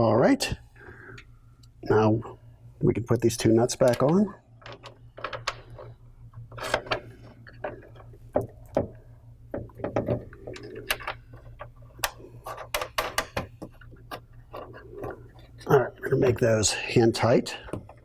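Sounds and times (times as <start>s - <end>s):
light clicks and taps of parts: 3.8s - 6.0s, 6.6s - 14.6s.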